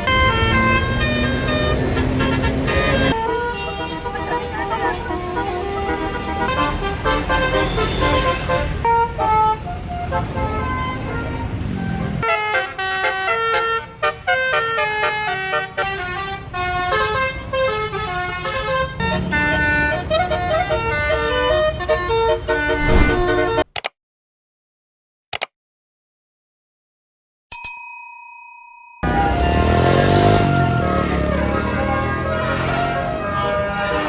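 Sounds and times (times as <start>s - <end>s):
bus engine rumbling: 0.0s - 23.6s
bus musical horn playing a tune: 0.0s - 23.6s, 29.0s - 34.0s.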